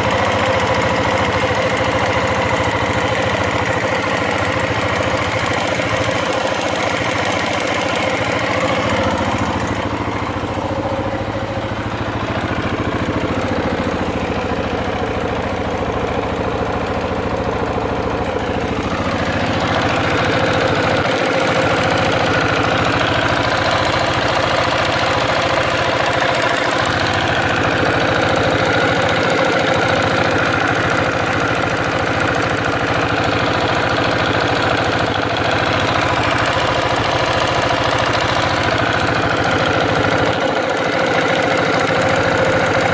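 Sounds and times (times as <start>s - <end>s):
motorcycle engine idling: 0.0s - 42.9s.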